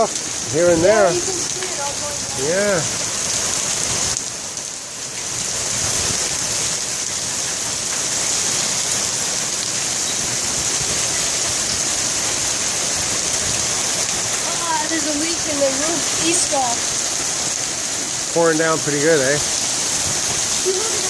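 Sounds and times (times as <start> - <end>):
heavy rain and hail: 0.0 - 21.0.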